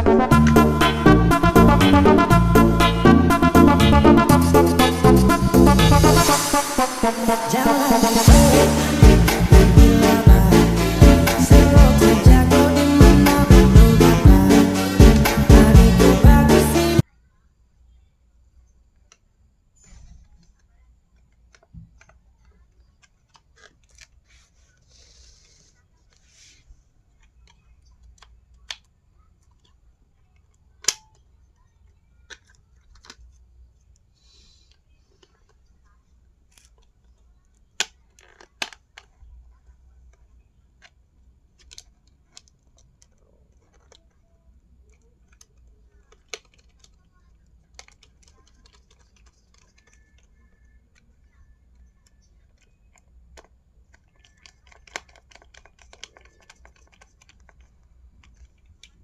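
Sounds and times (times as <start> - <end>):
keyboard typing: 0.0 - 17.0, 41.5 - 59.0
laptop handling clicks and taps: 51.8 - 59.0.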